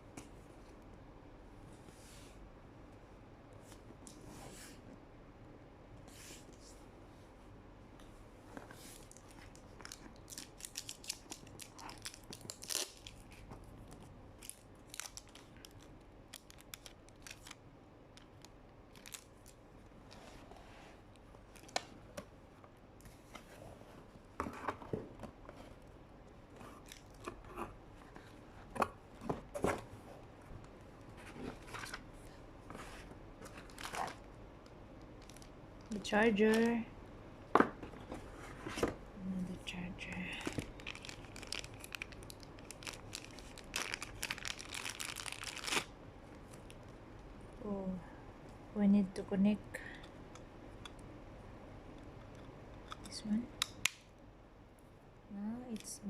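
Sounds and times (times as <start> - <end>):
cardboard and wrapping tearing: 9.8 - 13.4, 40.8 - 45.9.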